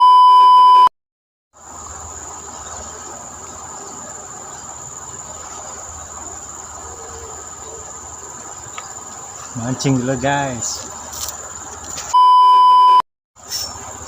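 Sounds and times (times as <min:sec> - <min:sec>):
loud electronic beep: 0:00.0 - 0:00.9, 0:12.2 - 0:13.0
insects droning: 0:01.6 - 0:12.1, 0:13.4 - 0:14.0.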